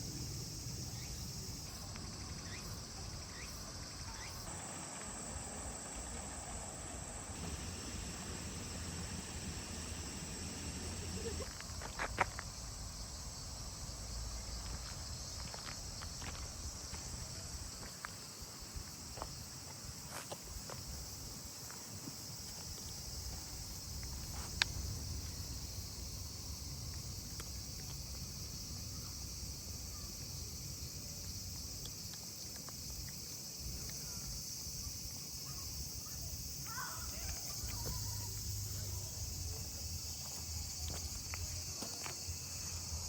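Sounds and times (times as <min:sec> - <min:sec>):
high-pitched insect chorus: 0:00.0 - 0:43.0
low background rumble: 0:07.0 - 0:11.8.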